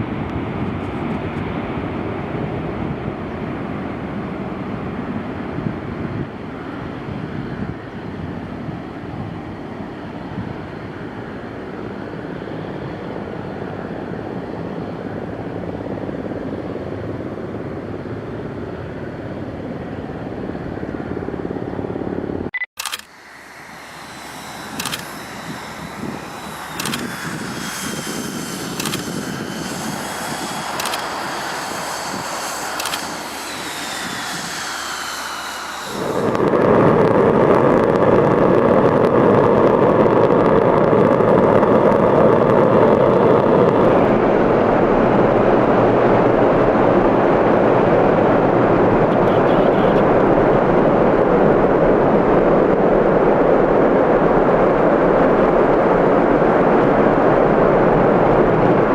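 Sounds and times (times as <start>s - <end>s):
jet engine whine: 0.0s - 58.9s
loud steady jet rush: 0.0s - 58.9s
sharp clicks: 22.6s - 23.1s, 24.7s - 25.2s, 26.8s - 27.4s, 28.6s - 29.1s, 30.7s - 31.2s, 32.8s - 33.2s.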